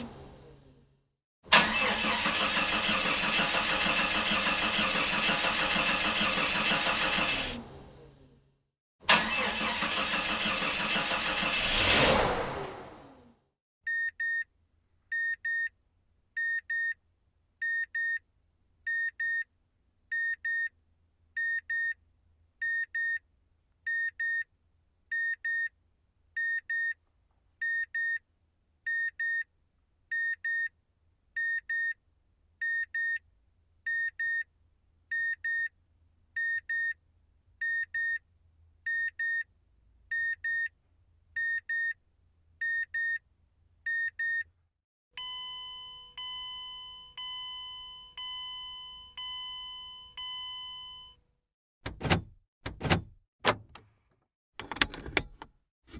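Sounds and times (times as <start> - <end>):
car engine revving: 9.1 - 13.4.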